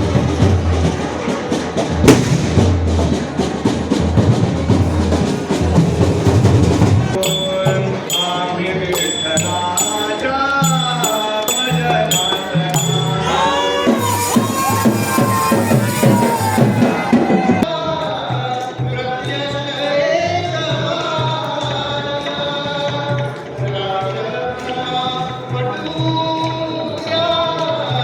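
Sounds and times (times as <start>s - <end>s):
regular drum beat: 0.0s - 17.6s
fast drumming: 0.0s - 17.7s
jingling percussion: 3.0s - 28.0s
wavering shehnai melody: 4.8s - 17.6s.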